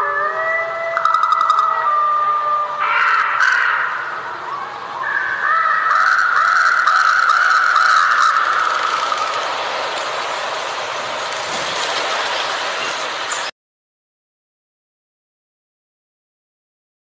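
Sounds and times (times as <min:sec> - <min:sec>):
wavering tone: 0:00.0 - 0:02.8
steady forest hiss: 0:00.0 - 0:13.5.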